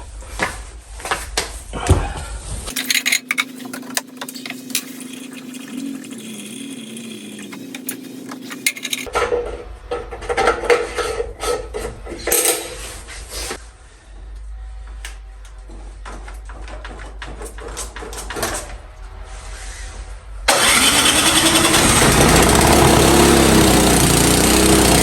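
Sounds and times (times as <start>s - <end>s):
metal tools clinking: 8.5s - 9.1s.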